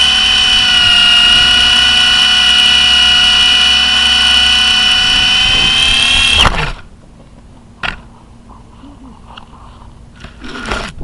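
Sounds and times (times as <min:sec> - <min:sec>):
model helicopter rotor whine: 0:00.0 - 0:06.5.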